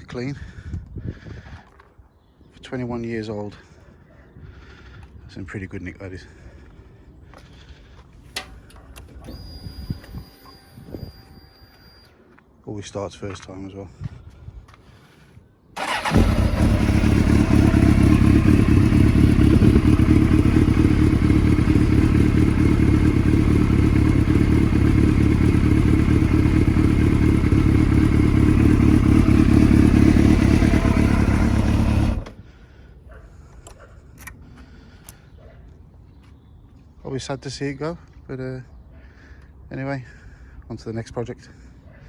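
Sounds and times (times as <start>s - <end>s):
motorcycle engine starting and running: 8.3s - 11.2s, 15.8s - 32.5s.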